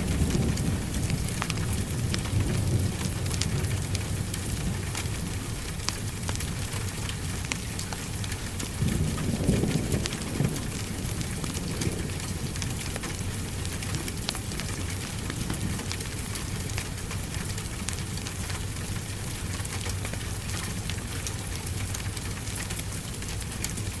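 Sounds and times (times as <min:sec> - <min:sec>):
wood fire crackling and popping: 0:00.0 - 0:18.8.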